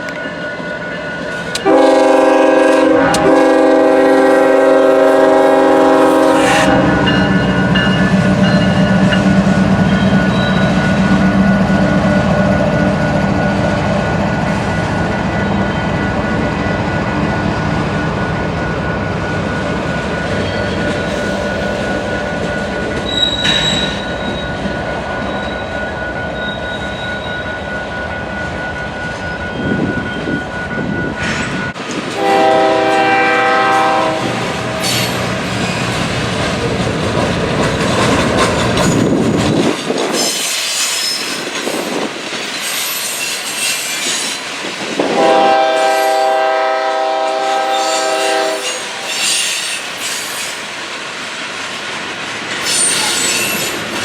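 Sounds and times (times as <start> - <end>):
freight train rumble and wheel noise: 0.0 - 54.0
locomotive air horn blasts: 1.5 - 7.5, 32.2 - 35.2, 45.0 - 49.5.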